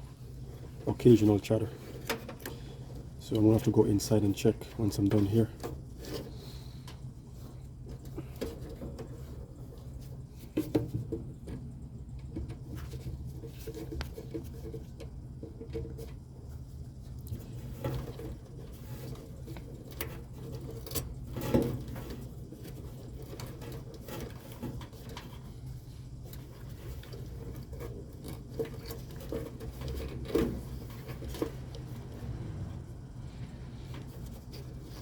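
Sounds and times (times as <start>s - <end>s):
low electrical hum: 0.0s - 35.0s.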